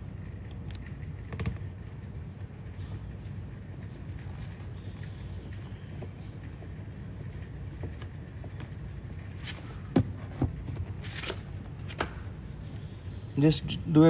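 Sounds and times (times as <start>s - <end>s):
steady low rumble: 0.0s - 14.0s.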